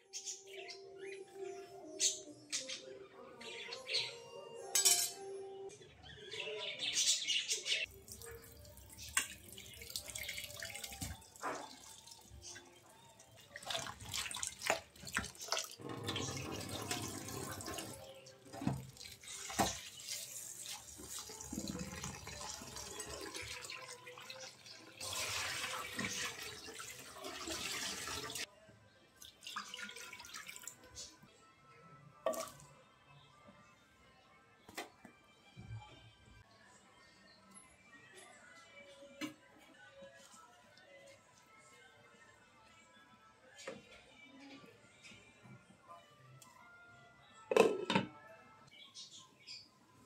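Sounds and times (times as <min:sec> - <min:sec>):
tap water running into sink: 0:08.9 - 0:11.9, 0:13.6 - 0:28.5.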